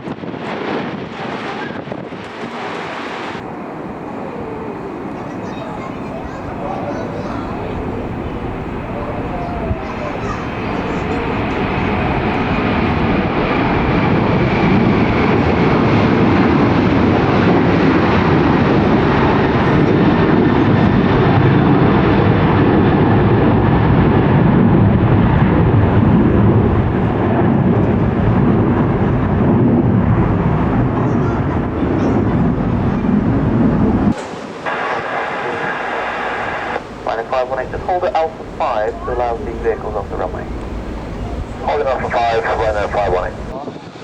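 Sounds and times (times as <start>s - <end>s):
jet engines rumbling at takeoff: 0.0s - 44.0s
faint high engine whine: 34.1s - 43.6s.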